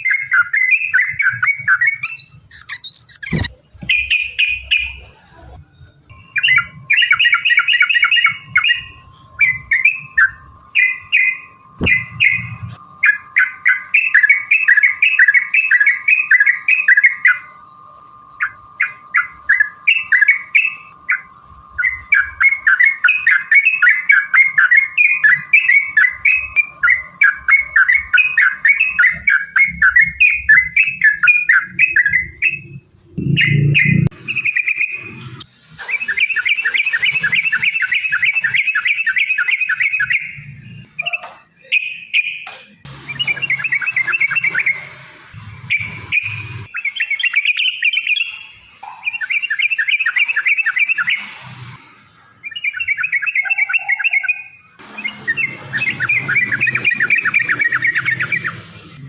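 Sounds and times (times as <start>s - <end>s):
faint steady high tone: 0.0s - 35.1s
bulbuls singing chattering runs: 0.0s - 35.2s, 35.8s - 51.3s, 52.4s - 59.0s.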